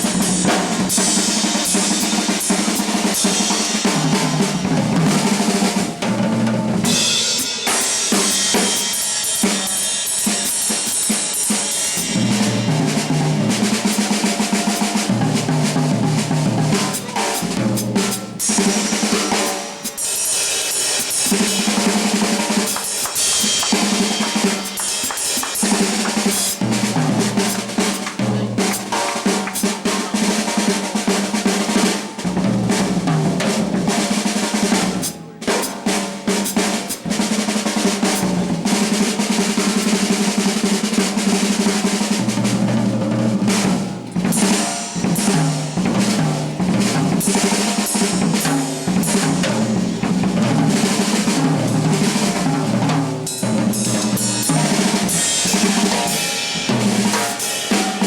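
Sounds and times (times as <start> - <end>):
drum kit: 0.0 - 58.0.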